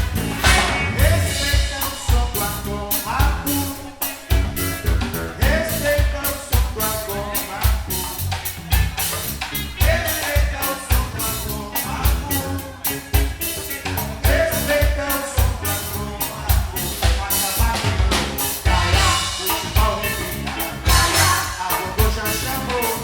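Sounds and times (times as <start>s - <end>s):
drum beat: 0.0s - 7.0s, 7.6s - 11.2s
person singing: 0.0s - 8.3s, 9.7s - 23.0s
live band music: 0.0s - 23.0s.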